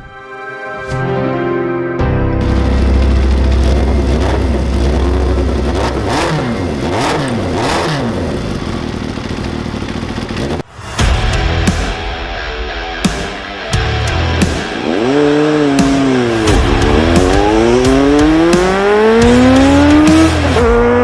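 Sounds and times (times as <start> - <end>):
motorcycle engine revving: 2.4 - 10.8, 13.7 - 21.0.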